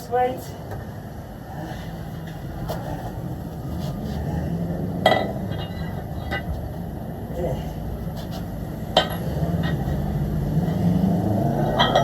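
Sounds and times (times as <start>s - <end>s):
low rumble of passing vehicle: 0.8s - 12.0s.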